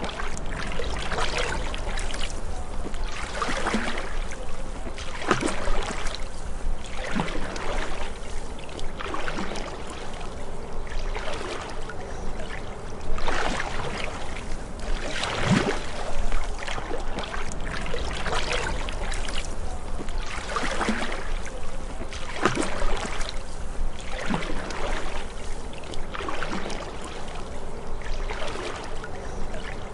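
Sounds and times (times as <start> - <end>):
paddle strokes in water: 0.0 - 29.9.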